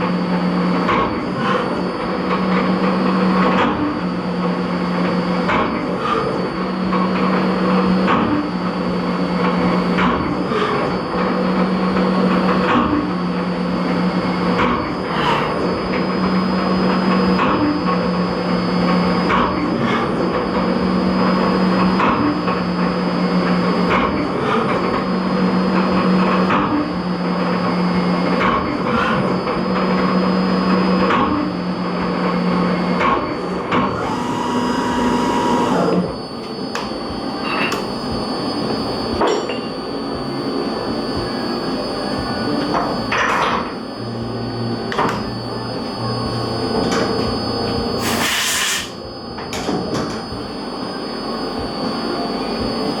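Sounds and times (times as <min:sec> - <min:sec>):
pulsing low machine tone: 0:00.0 - 0:48.2, 0:48.8 - 0:53.0
steady high whine: 0:00.0 - 0:53.0
higher machine tone: 0:28.8 - 0:53.0.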